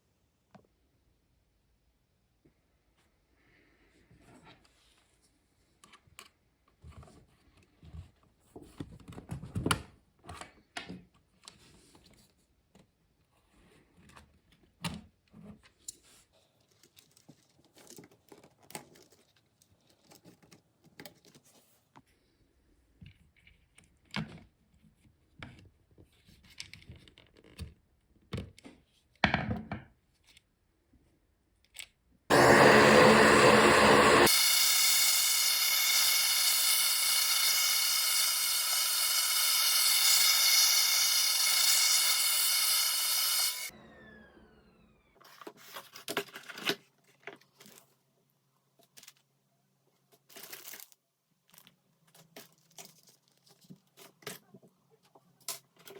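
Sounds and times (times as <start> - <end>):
small electric motor whining: 32.3 - 45.0.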